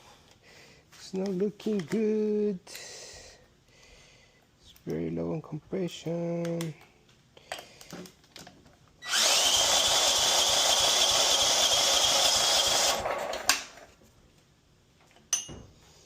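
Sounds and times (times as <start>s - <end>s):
engine cranking with starter whine: 9.0s - 13.8s.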